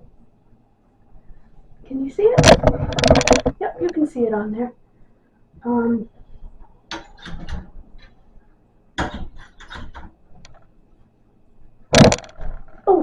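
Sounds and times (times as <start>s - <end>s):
plastic accessories clicking and knocking: 2.4s - 3.6s, 11.9s - 12.7s.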